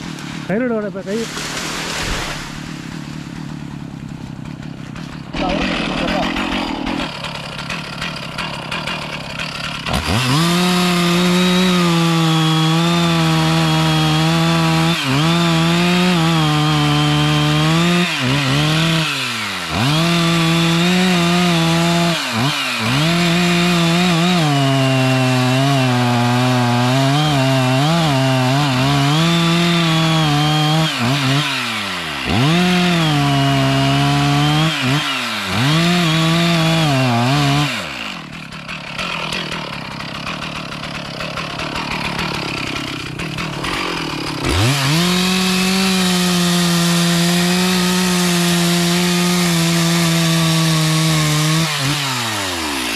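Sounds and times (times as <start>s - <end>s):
chainsaw cutting wood: 0.0s - 52.9s.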